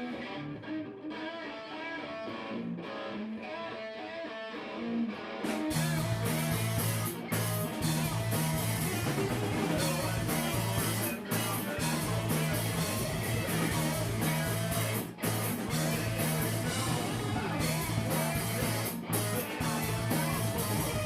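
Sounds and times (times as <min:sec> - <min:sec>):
electric guitar: 0:00.0 - 0:21.0
repeating bass riff: 0:05.7 - 0:21.0.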